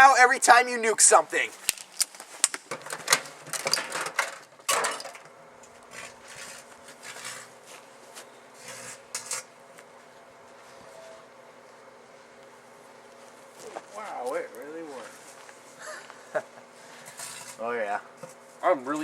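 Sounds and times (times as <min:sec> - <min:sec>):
microwave oven humming: 0:04.6 - 0:13.7.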